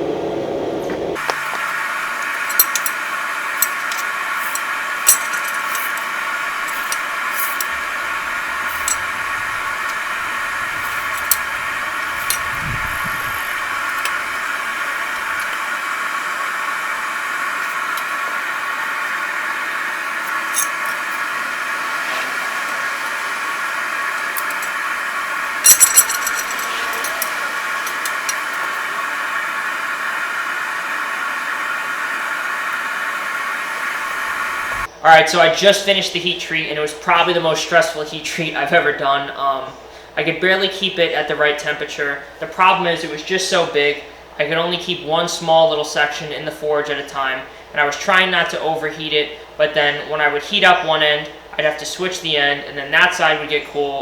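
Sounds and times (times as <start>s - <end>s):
forge rushing noise: 0.0s - 34.9s.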